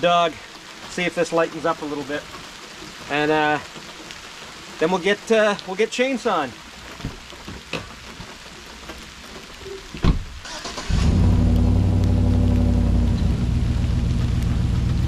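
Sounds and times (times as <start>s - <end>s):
thump: 10.0s - 10.3s
small engine starting and idling: 10.4s - 11.9s.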